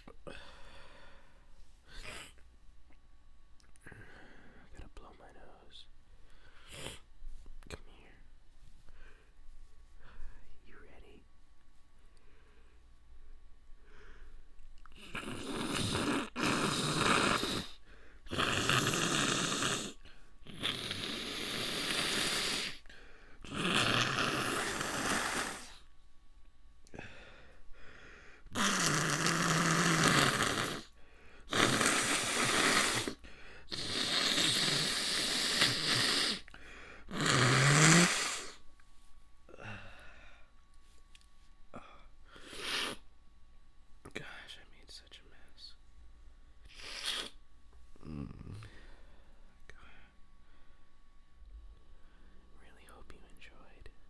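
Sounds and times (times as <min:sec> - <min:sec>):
person breathing heavily: 0:00.2 - 0:02.4, 0:03.8 - 0:04.8, 0:06.2 - 0:07.1, 0:08.8 - 0:10.5, 0:13.8 - 0:18.6, 0:19.9 - 0:25.9, 0:26.9 - 0:30.0, 0:30.8 - 0:38.6, 0:39.5 - 0:40.5, 0:48.0 - 0:50.8.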